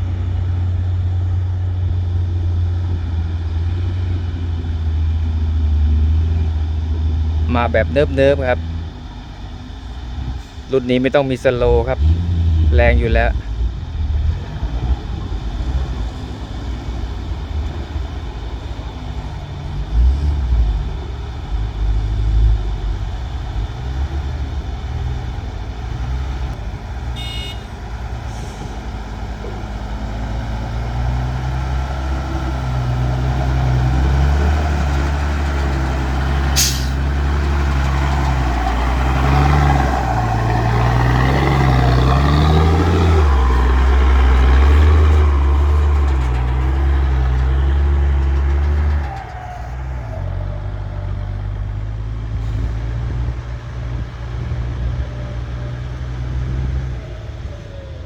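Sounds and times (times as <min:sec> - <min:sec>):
diesel truck engine under load: 0:00.0 - 0:58.0
sharp hiss: 0:36.6 - 0:37.1.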